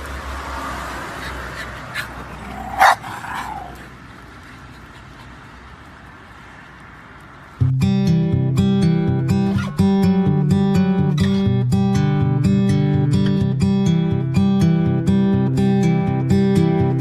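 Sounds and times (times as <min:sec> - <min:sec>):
dog barking: 0:01.2 - 0:03.8.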